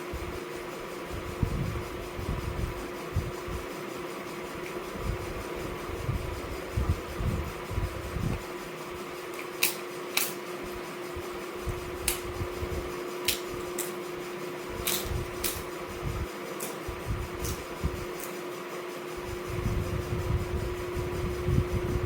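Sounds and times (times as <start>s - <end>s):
fan hum: 0.0s - 22.0s
soft low thumps: 19.2s - 22.0s.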